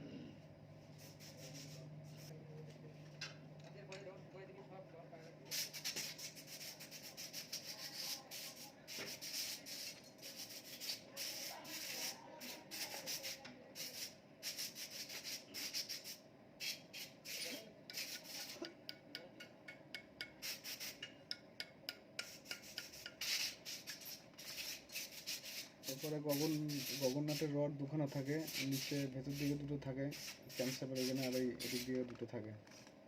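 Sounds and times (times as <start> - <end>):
metal tools scraping and clicking: 17.4 - 23.2.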